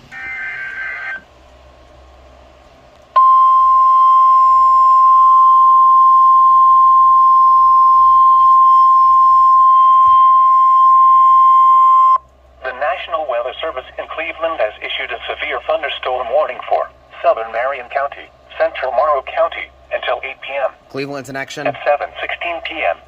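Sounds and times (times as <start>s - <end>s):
loud steady alarm tone: 0.0s - 1.3s, 3.2s - 12.2s
screeching data tones: 0.1s - 1.3s.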